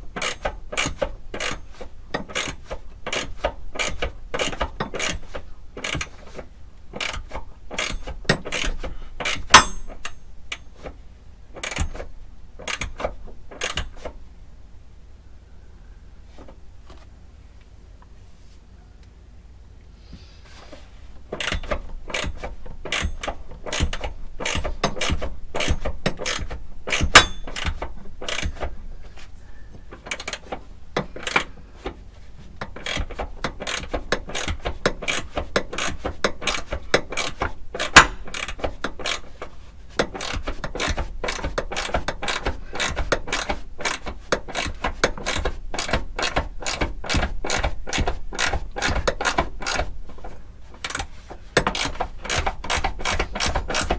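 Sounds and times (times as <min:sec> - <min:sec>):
ratchet wrench clicking: 0:00.2 - 0:06.2, 0:07.0 - 0:10.6, 0:12.6 - 0:13.9, 0:21.4 - 0:28.6, 0:32.7 - 0:49.9, 0:50.8 - 0:53.9.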